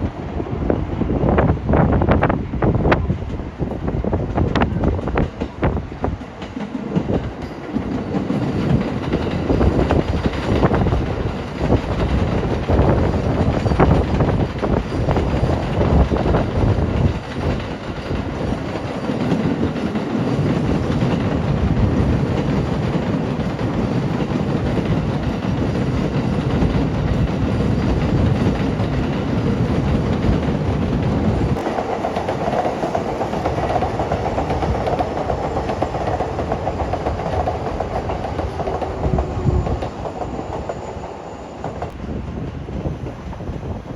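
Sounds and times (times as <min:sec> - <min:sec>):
train running on rails: 0:00.0 - 0:43.9
wheels clattering on rails: 0:04.1 - 0:40.9.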